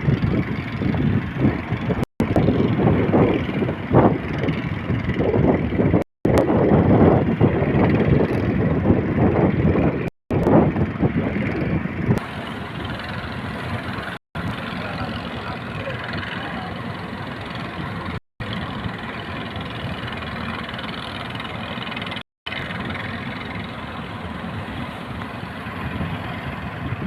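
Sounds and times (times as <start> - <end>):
wind buffeting microphone: 0.0 - 27.0
rushing water: 12.2 - 27.0.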